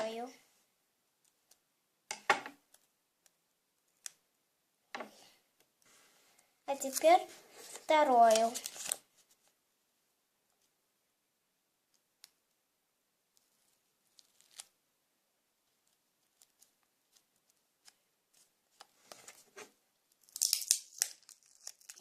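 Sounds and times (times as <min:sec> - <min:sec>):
sticky tape and paper handling: 0:06.7 - 0:09.0.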